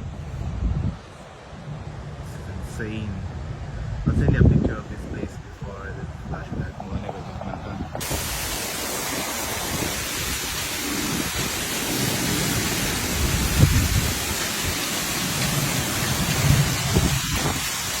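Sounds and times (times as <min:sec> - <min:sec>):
rushing flood water: 0:04.9 - 0:18.0.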